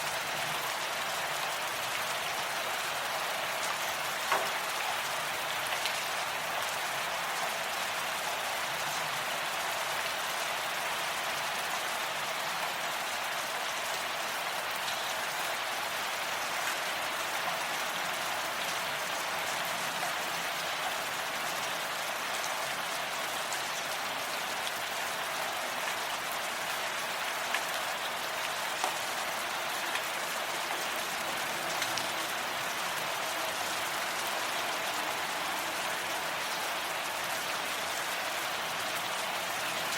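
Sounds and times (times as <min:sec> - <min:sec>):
raindrops ticking: 0:28.4 - 0:32.2.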